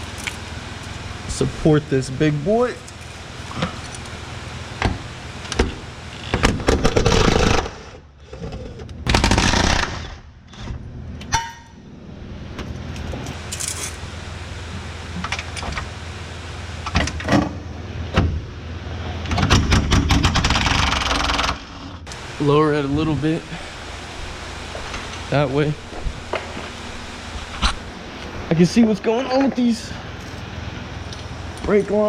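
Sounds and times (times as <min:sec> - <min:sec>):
metal tools clanking and scraping: 0:13.2 - 0:14.0.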